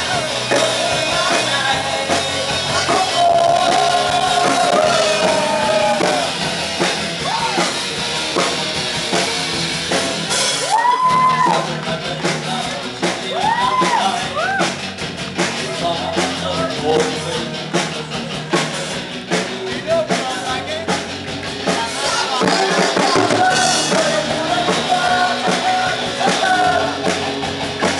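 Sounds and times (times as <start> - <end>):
rock music: 0.0 - 27.9.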